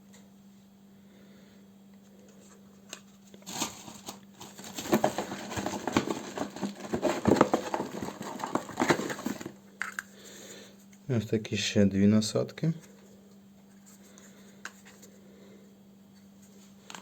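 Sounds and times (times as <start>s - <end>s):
packaging rustling: 3.0s - 9.6s.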